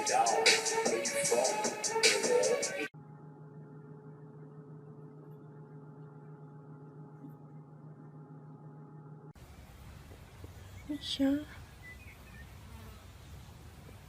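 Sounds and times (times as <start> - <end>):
faint low hum: 2.9 - 14.0.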